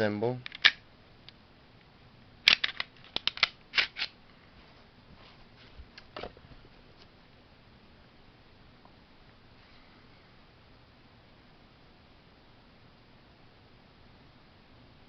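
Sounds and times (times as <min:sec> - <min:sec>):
pistol clicks and clacks: 0:00.5 - 0:00.8, 0:02.5 - 0:04.2.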